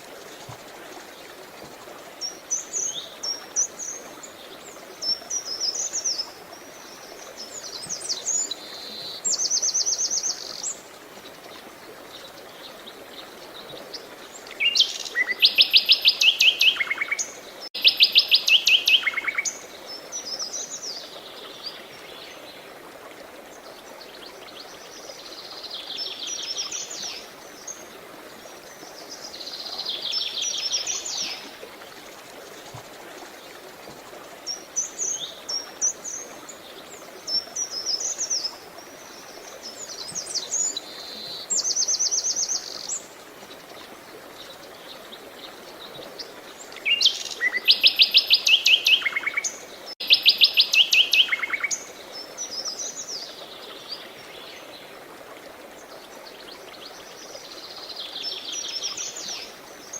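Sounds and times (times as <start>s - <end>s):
flowing water: 0.0s - 59.9s
songbirds singing: 33.4s - 55.0s.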